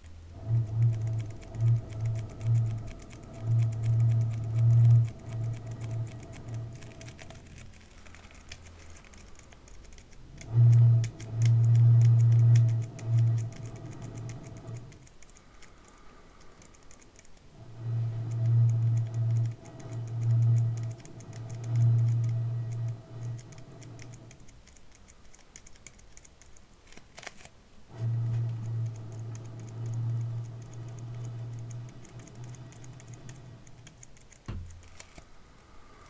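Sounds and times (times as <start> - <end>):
low plastic thrumming: 34.4 - 35.0.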